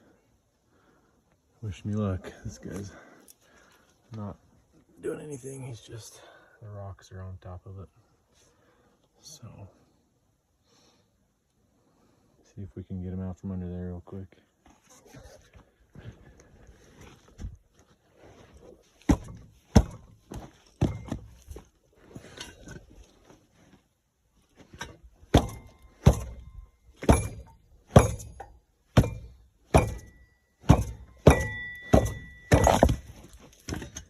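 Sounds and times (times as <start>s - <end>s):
heavy metallic knocks: 25.3s - 33.0s.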